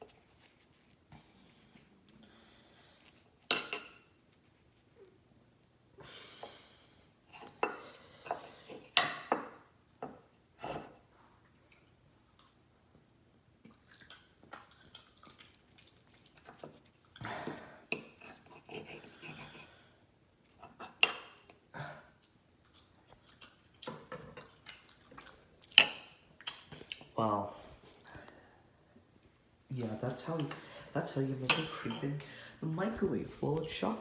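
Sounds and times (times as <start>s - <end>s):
cutlery clinking on a plate: 3.5s - 4.1s, 7.4s - 10.9s, 20.8s - 21.6s, 25.7s - 26.2s, 31.4s - 32.2s.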